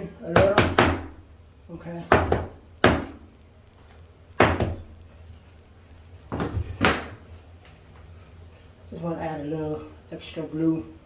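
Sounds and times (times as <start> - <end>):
hammer knocking wooden plug: 4.4 - 4.8.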